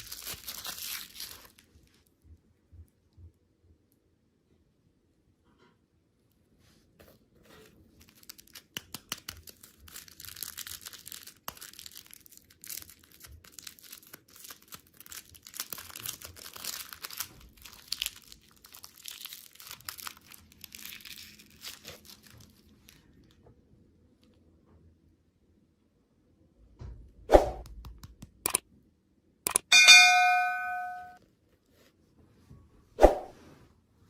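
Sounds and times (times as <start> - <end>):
plastic wrapper crinkling: 0.0 - 2.0, 7.6 - 23.4.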